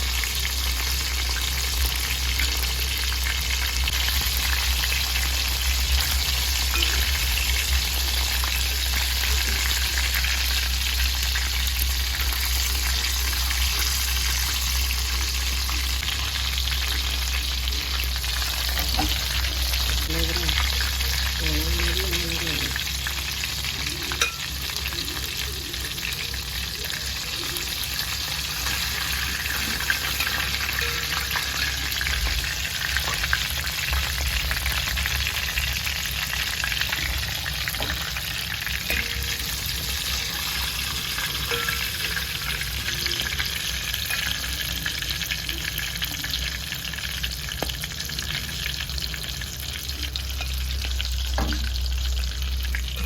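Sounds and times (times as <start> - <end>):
chicken deep-frying in oil: 0.0 - 53.0.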